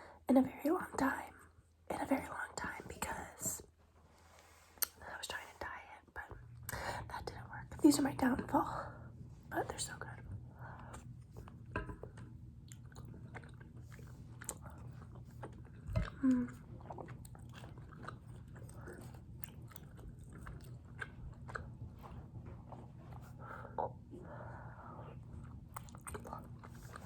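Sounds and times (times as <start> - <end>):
person chewing food: 10.3 - 27.0.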